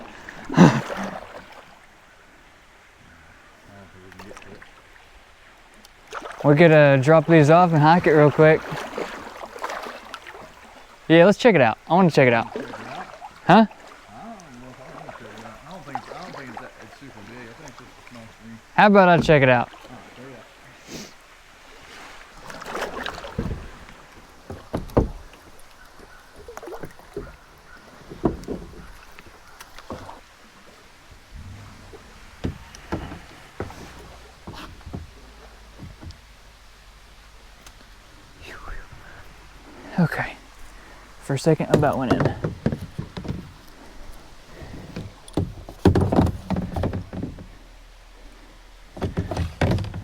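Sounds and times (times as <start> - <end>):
dull knocks against kayak hull: 22.5 - 25.7, 26.6 - 30.2, 31.3 - 36.4, 41.6 - 47.6, 48.9 - 50.0.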